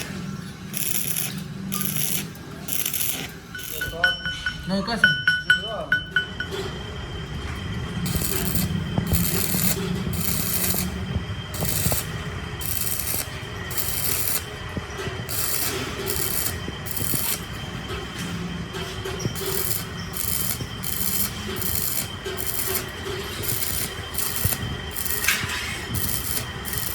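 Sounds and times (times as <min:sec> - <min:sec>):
steady machine hum: 0:00.0 - 0:26.9.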